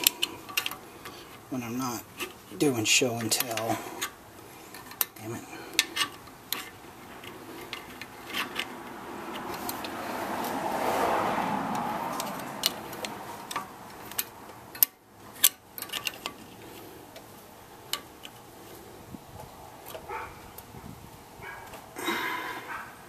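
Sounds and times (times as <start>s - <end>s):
metal tools clicking and clinking: 12.1s - 16.8s.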